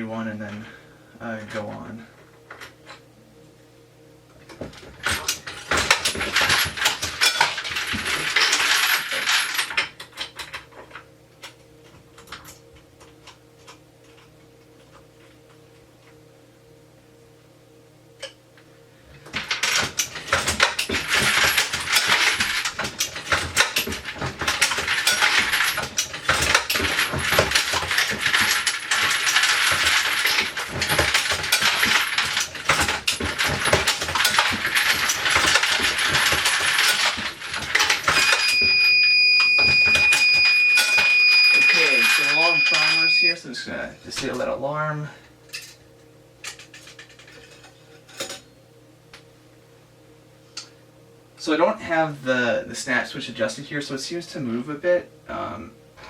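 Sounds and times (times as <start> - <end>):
low steady hum: 0.0 - 56.0
brass cases clattering in feeders: 4.9 - 10.5, 19.3 - 43.3.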